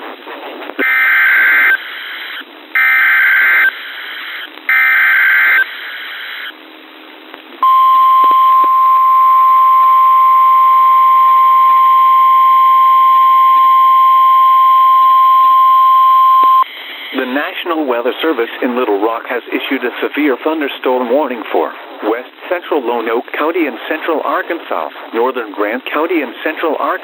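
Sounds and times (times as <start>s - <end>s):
steady warning alarm tone: 0.8s - 6.5s, 7.6s - 16.7s.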